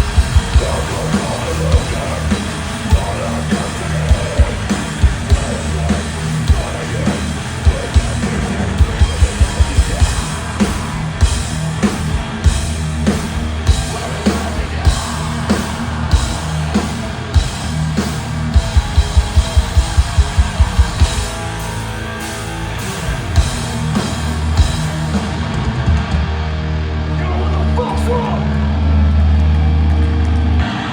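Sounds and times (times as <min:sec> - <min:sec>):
rapid loud drum hits: 0:00.0 - 0:21.4
metal band playing live: 0:00.0 - 0:30.9.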